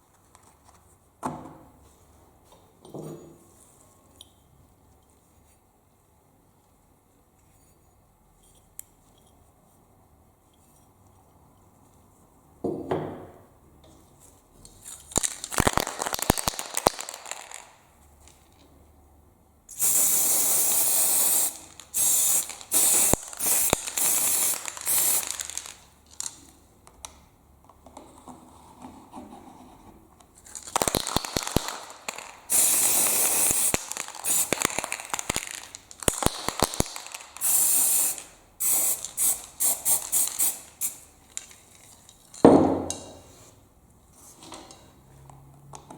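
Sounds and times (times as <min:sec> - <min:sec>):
spray can hissing: 0:19.7 - 0:25.8, 0:30.8 - 0:41.0.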